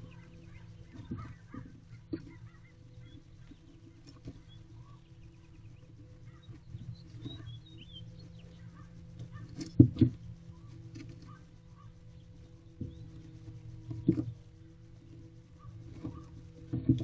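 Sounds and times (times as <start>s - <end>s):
small birds chirping: 0.0s - 17.0s
steady low hum: 0.0s - 17.0s
owl scraping and knocking: 0.5s - 5.0s, 8.6s - 11.9s, 15.1s - 17.0s.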